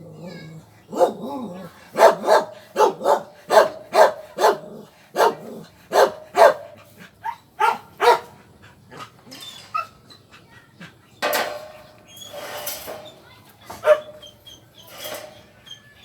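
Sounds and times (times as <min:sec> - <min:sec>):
dog barking: 0:00.9 - 0:08.4, 0:13.8 - 0:14.2.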